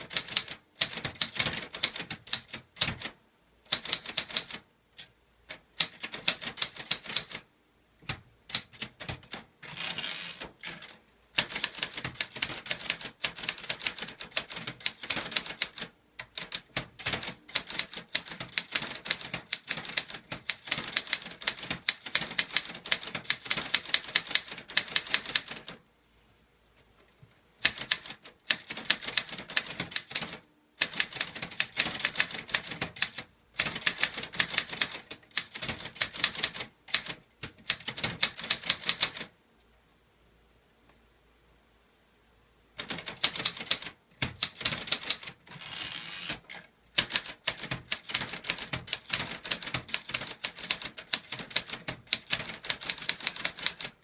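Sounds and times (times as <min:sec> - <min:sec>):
typewriter key strikes: 0:01.2 - 0:03.1, 0:42.8 - 0:44.8.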